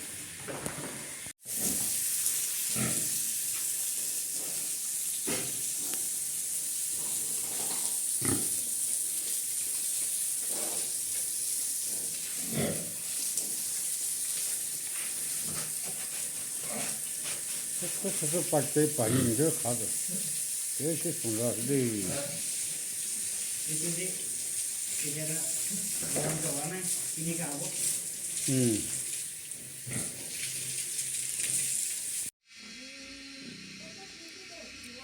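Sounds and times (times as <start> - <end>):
steady high hiss: 1.4 - 25.9, 31.9 - 35.0
pigs grunting: 7.0 - 8.6, 12.4 - 12.9, 18.9 - 20.4, 29.9 - 30.2.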